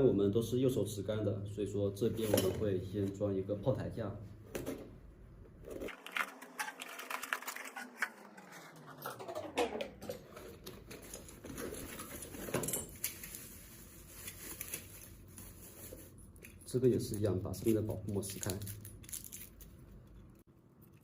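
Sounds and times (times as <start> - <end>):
smooth falling sweep: 7.3 - 10.0.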